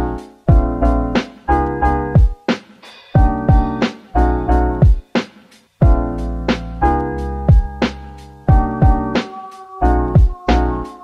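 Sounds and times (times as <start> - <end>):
mellow keyboard music with beat: 0.0 - 11.0
deep kick drum: 0.5 - 0.8, 2.2 - 2.4, 3.2 - 3.8, 4.7 - 5.1, 5.8 - 6.2, 7.5 - 7.8, 8.5 - 9.1, 10.2 - 10.4.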